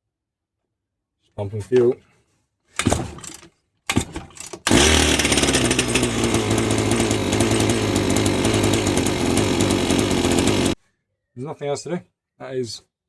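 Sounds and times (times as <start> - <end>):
strimmer pull-start: 2.8 - 10.8
strimmer engine buzzing: 3.9 - 10.8.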